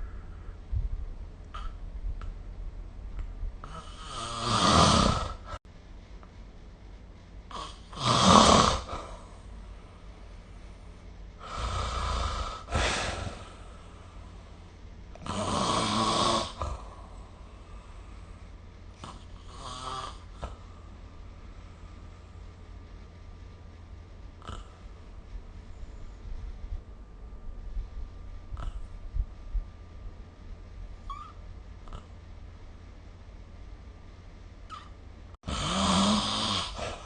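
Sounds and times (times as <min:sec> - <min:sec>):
quiet breathing: 0:00.0 - 0:01.8, 0:08.8 - 0:15.3, 0:16.5 - 0:23.5
person snoring: 0:03.6 - 0:05.6, 0:07.5 - 0:09.2, 0:11.4 - 0:13.6, 0:15.2 - 0:17.1, 0:35.4 - 0:37.0.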